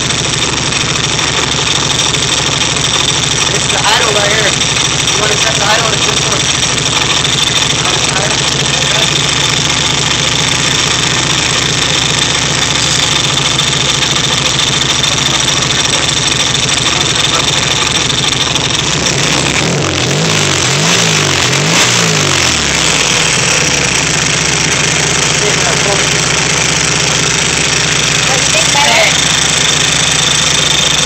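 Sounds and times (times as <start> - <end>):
engine running and revving: 0.0 - 31.0.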